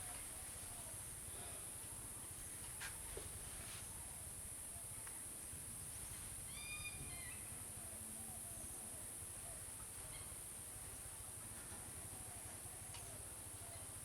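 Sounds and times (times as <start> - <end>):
bird call: 6.5 - 7.5.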